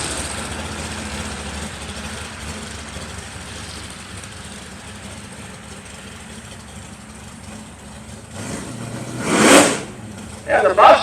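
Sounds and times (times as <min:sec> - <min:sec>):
drag car engines rumbling: 0:00.0 - 0:11.0.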